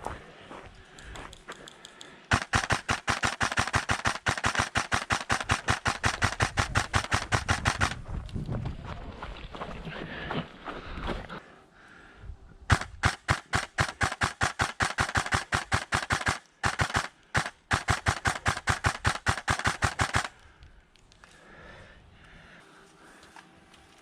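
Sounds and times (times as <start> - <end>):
airsoft rifle firing rapid shots: 2.3 - 8.0, 12.7 - 20.4.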